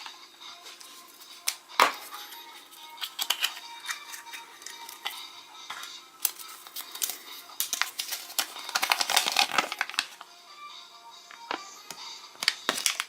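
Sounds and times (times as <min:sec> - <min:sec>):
soft background music: 0:00.0 - 0:13.0
foil crinkling: 0:03.0 - 0:05.2, 0:06.2 - 0:10.2, 0:12.4 - 0:13.0.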